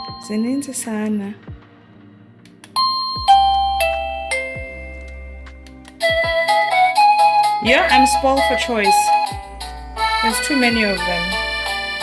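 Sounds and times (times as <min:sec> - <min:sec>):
doorbell chime melody: 0:00.0 - 0:00.9, 0:02.8 - 0:11.4.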